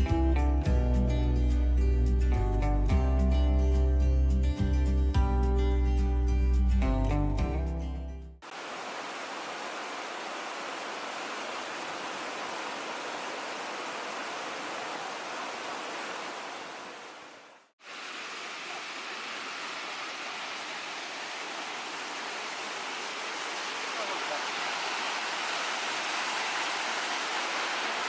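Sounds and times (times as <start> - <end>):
waterfall rushing: 8.4 - 28.0.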